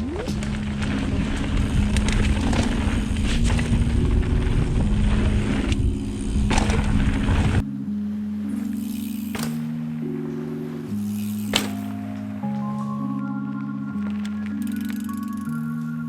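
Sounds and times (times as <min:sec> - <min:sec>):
bike tyres rattling on dirt: 0:00.0 - 0:07.6, 0:08.5 - 0:12.9, 0:14.0 - 0:15.8
wind rumble on microphone: 0:00.0 - 0:07.6
background music with held notes: 0:00.0 - 0:16.0.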